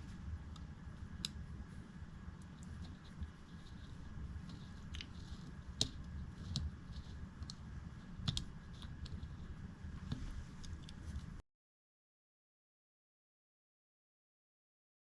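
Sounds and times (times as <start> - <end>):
low steady hum: 0.0 - 11.4
small metal clicks and taps: 8.2 - 9.2.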